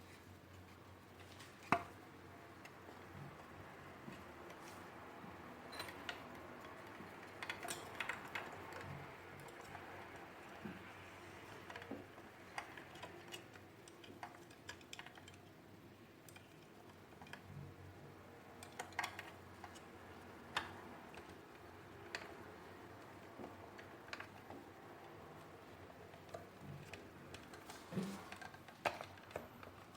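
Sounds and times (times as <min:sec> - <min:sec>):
plastic parts clicking and tapping: 0:05.7 - 0:15.6, 0:18.6 - 0:24.8, 0:25.4 - 0:29.9.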